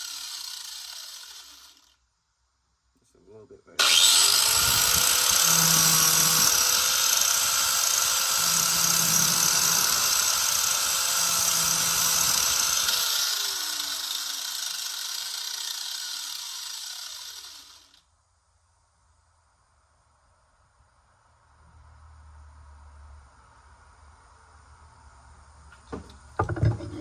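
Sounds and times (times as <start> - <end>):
angle grinder grinding steel: 0.0 - 2.0, 3.8 - 18.0.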